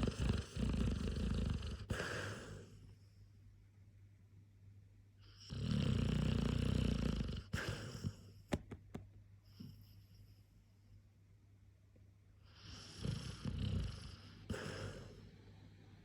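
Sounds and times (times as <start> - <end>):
dog snoring: 0.0 - 3.0, 5.2 - 8.4, 12.4 - 15.4
quiet breathing: 0.0 - 3.6, 12.4 - 16.0.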